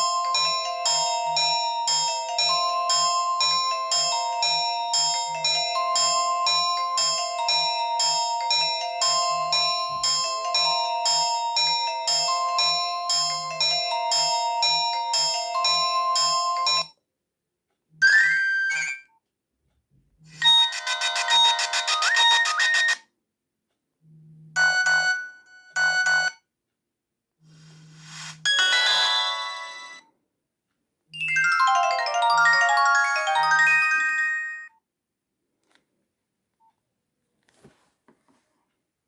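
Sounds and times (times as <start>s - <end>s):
mobile phone ringtone melodies: 0.0s - 16.9s, 18.0s - 19.0s, 20.4s - 23.0s, 24.6s - 26.3s, 28.0s - 30.0s, 31.2s - 34.7s.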